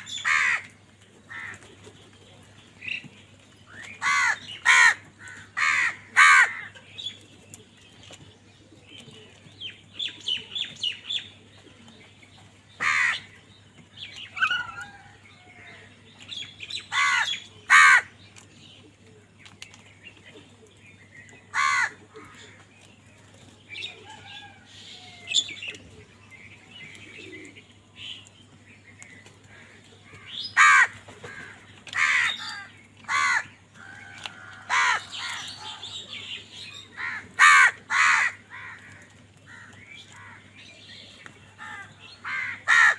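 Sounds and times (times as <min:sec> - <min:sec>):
crows cawing: 0:00.0 - 0:01.6, 0:04.0 - 0:06.8, 0:12.8 - 0:13.4, 0:16.9 - 0:18.1, 0:21.5 - 0:22.6, 0:29.5 - 0:35.8, 0:36.9 - 0:40.5, 0:41.6 - 0:42.9.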